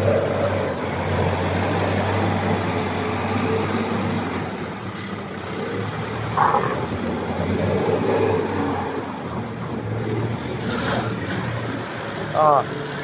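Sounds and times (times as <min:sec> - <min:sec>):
vehicle engine humming: 0:00.0 - 0:13.0.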